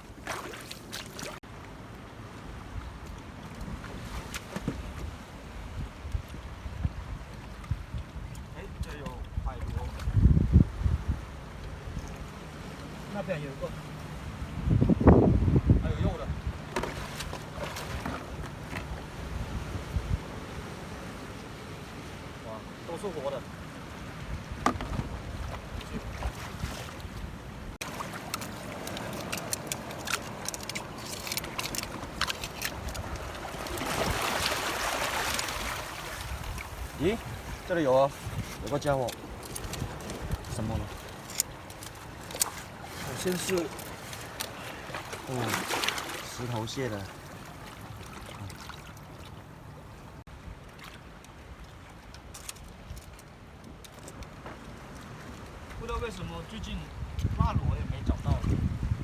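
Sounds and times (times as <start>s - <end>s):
seawater washing among rocks: 0.0s - 2.3s, 3.2s - 59.0s
wind rumble on microphone: 2.4s - 13.0s, 13.6s - 22.4s, 23.5s - 27.8s, 28.7s - 44.4s, 54.8s - 59.0s.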